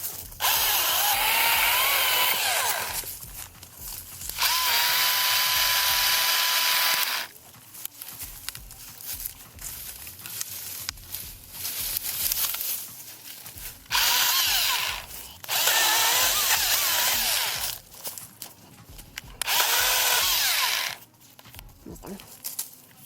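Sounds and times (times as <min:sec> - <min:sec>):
chainsaw cutting wood: 0:00.0 - 0:07.4, 0:13.8 - 0:17.9, 0:19.3 - 0:21.0
rustling: 0:00.0 - 0:23.0.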